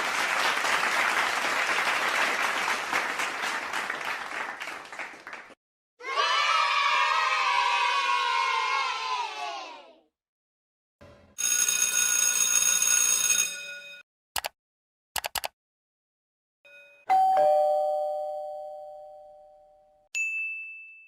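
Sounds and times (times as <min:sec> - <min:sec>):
short clicks: 0:14.4 - 0:14.6, 0:15.2 - 0:15.6
short high ding: 0:16.7 - 0:21.0
two-note ding-dong chime: 0:16.7 - 0:21.0.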